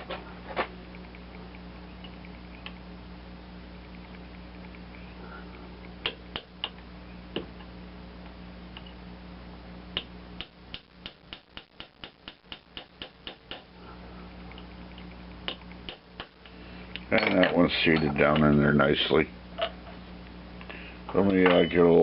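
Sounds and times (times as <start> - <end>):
small parts tapping and clicking: 14.5 - 18.6.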